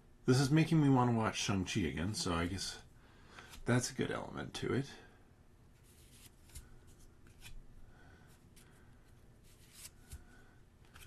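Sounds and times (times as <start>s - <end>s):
trading cards being handled: 5.8s - 7.7s, 8.3s - 11.0s.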